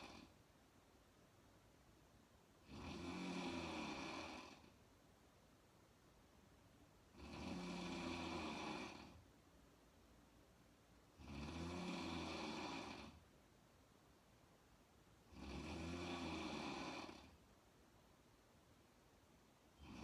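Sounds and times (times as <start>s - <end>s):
woman snoring: 0.0s - 0.4s, 2.6s - 4.8s, 7.1s - 9.2s, 11.2s - 13.2s, 15.3s - 17.4s, 19.8s - 20.0s.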